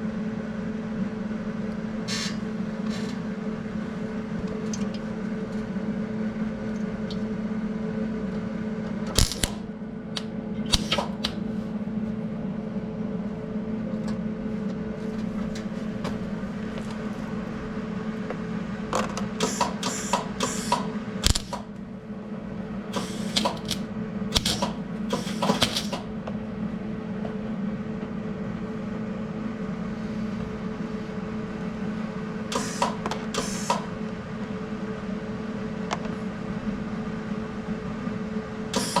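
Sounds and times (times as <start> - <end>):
electrical hum: 0.0 - 39.0
welding arc crackling: 9.1 - 9.7, 19.7 - 21.7, 23.0 - 25.9.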